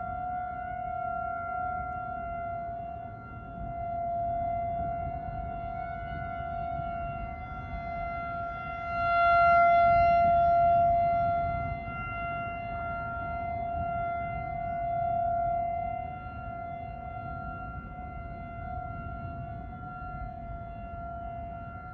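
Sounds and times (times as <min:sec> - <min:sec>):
tornado warning siren: 0:00.0 - 0:21.9.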